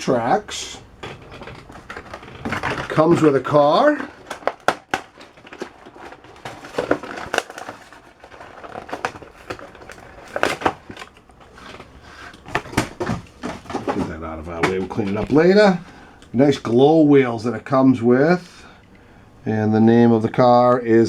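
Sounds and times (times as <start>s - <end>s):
toy packaging crackling and snapping: 0.8s - 16.3s.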